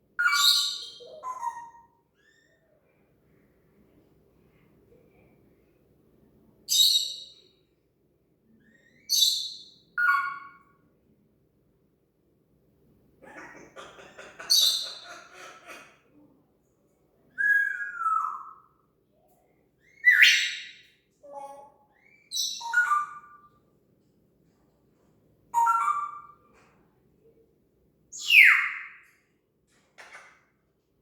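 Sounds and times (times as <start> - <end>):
parrot whistling: 25.6 - 26.3.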